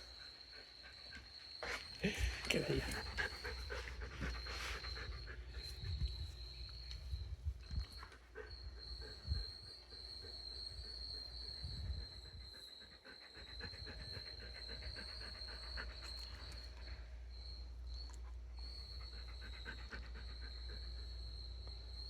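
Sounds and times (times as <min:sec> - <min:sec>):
dog panting: 0:00.0 - 0:17.2, 0:18.1 - 0:22.0.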